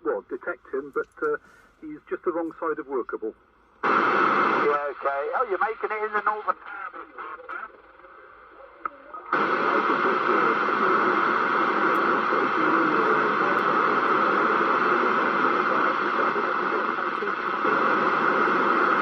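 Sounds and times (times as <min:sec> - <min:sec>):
radio static hiss: 0:00.0 - 0:19.0.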